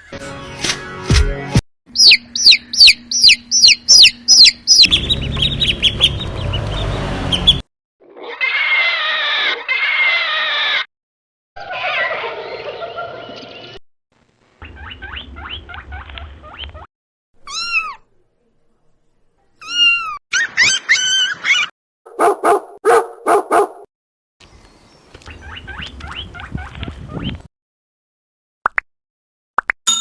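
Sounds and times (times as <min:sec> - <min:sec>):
pet animal cries: 0:08.1 - 0:10.9, 0:17.4 - 0:18.0, 0:19.6 - 0:21.7.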